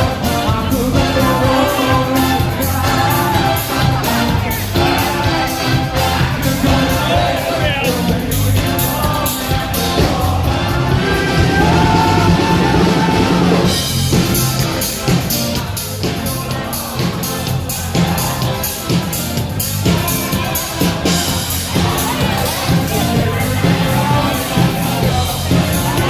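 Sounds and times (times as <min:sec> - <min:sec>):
bass guitar: 0:00.0 - 0:26.0
drum kit: 0:00.0 - 0:26.0
person singing: 0:00.0 - 0:26.0.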